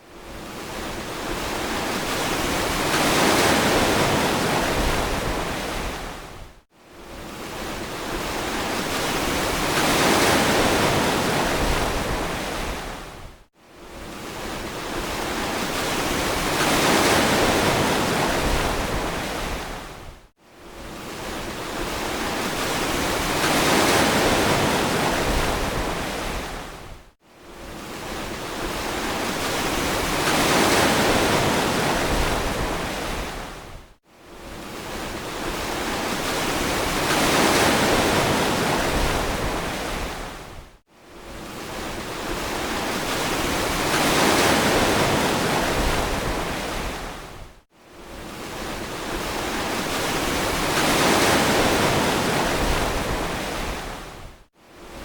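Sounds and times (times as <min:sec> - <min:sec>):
ocean waves washing onto beach: 0:00.1 - 0:40.6, 0:41.2 - 0:55.0.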